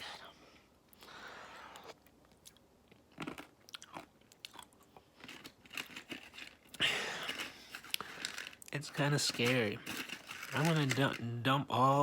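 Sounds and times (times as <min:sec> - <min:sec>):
person chewing crunchy food: 0:01.7 - 0:08.5.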